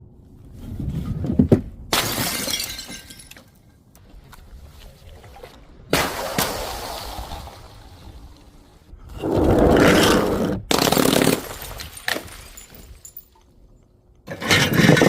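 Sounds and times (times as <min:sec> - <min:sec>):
glass bottles shattering: 0:01.9 - 0:03.6, 0:10.7 - 0:13.5.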